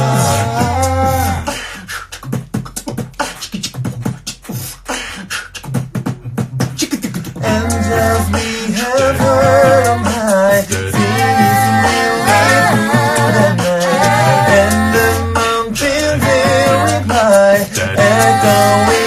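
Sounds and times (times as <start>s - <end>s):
low sung bass: 0.0s - 1.5s, 7.4s - 19.0s
close vocal harmonies: 0.0s - 2.0s, 6.8s - 19.0s
beatboxing: 0.0s - 19.0s.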